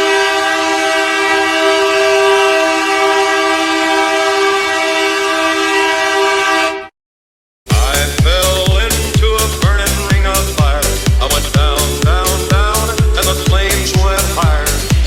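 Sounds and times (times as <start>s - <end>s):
goal horn blaring two-note chord: 0.0s - 6.9s, 9.8s - 14.8s
dance music with heavy beat: 7.7s - 15.0s.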